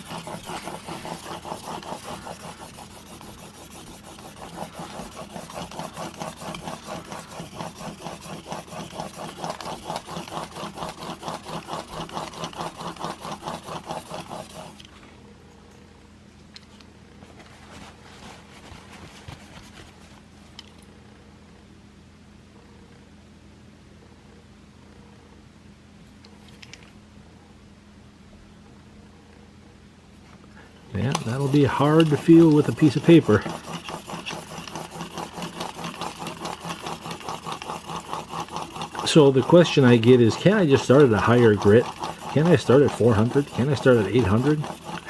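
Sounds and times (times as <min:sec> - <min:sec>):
blade rasping on sharpening plate: 0:00.0 - 0:14.9, 0:31.1 - 0:45.0.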